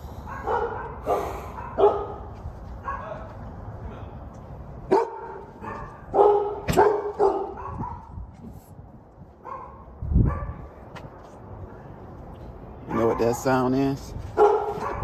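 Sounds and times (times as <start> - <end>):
dog barking: 0.2 - 3.3, 4.9 - 8.2, 9.4 - 10.6, 12.9 - 13.6, 14.4 - 15.0.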